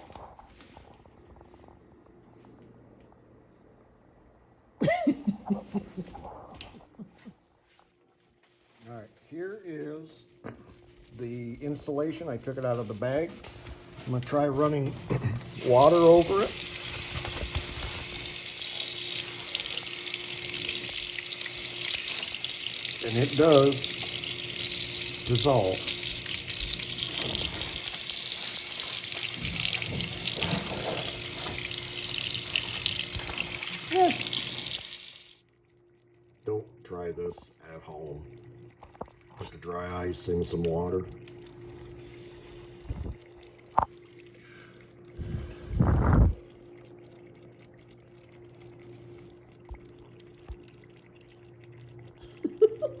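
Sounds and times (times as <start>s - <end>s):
water running from faucet into sink: 11.1s - 35.4s, 36.1s - 53.0s
low hum: 41.0s - 52.4s.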